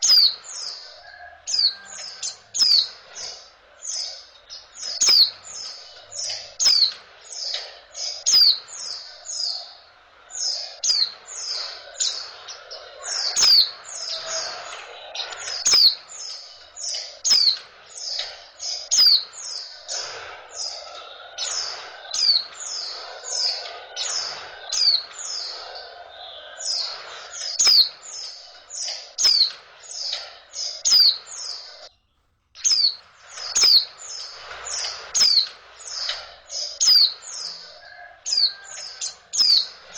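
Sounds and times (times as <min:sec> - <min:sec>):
bird chirping high notes: 0:32.6 - 0:39.9.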